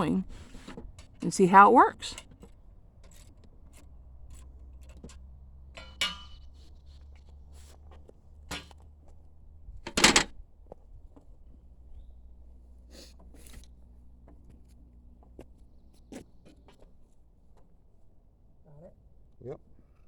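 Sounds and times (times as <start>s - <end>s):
wood and metal being handled: 2.1s - 9.2s, 9.9s - 10.3s
ringing metallic clang: 5.8s - 6.5s.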